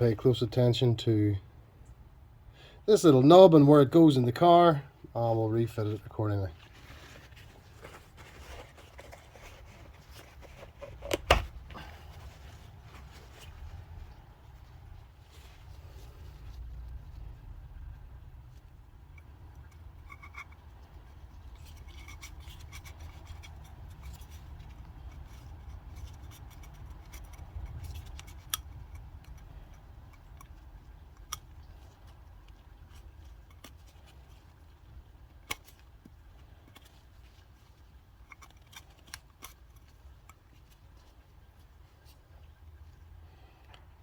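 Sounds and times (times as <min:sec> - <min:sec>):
low steady rumble: 0:00.0 - 0:44.0
plastic parts clicking and scraping: 0:06.6 - 0:13.7, 0:19.2 - 0:43.0.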